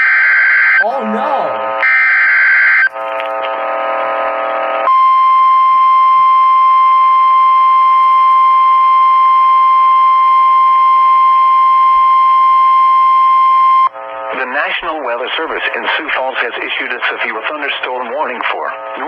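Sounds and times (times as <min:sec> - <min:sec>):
steady high-pitched alarm tone: 0:00.0 - 0:03.4, 0:05.0 - 0:13.9
harsh buzzing tone: 0:00.9 - 0:11.8.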